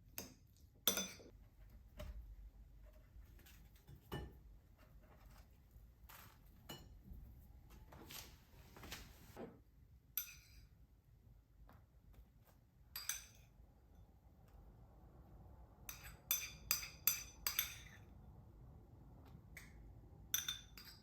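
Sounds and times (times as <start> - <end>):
dishes and cutlery clinking: 0.2 - 1.3, 3.9 - 4.5, 6.2 - 7.1, 12.9 - 13.5, 15.9 - 18.1, 20.3 - 21.0.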